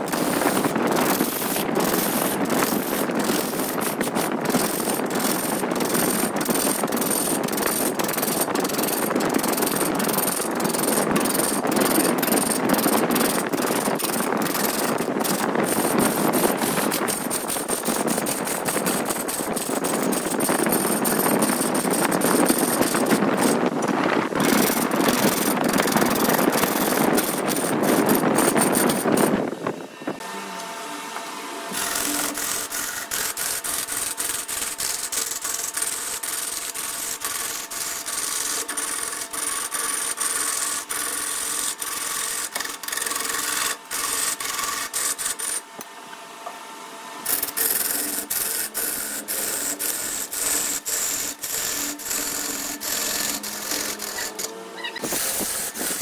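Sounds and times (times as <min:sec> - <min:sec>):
lathe tool scraping wood: 0:00.0 - 0:30.2, 0:31.7 - 0:45.7, 0:47.2 - 0:56.0.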